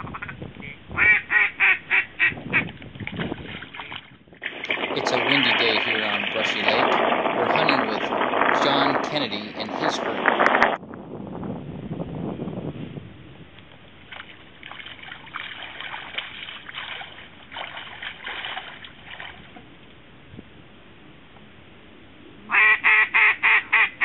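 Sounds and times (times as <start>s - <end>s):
faint duck quacks: 0.0s - 2.7s, 22.4s - 24.0s
rapid duck call quacks: 1.0s - 2.6s, 22.5s - 24.0s.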